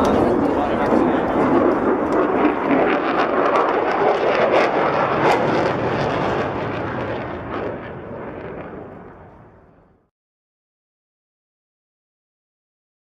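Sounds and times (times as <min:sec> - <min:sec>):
fighter jet passing: 0:00.0 - 0:10.1.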